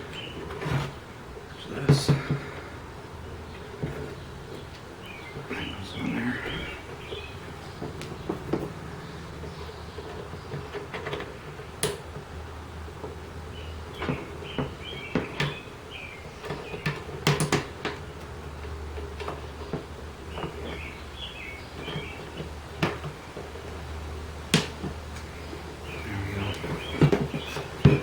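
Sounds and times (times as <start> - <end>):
high chirping: 5.0 - 8.4, 25.3 - 28.0
steady low hum: 18.0 - 28.0.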